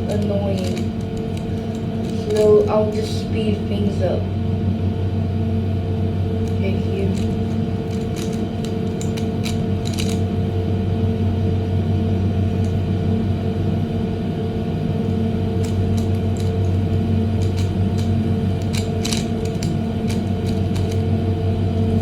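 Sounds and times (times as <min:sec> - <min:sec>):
air conditioner hum: 0:00.0 - 0:22.0
plastic puzzle faces clicking: 0:00.1 - 0:02.4, 0:06.5 - 0:10.2, 0:15.6 - 0:16.7, 0:17.4 - 0:21.0.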